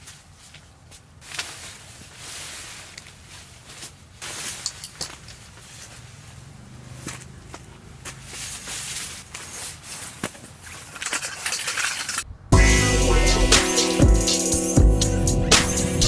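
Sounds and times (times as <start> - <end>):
rustling: 0.0 - 12.5.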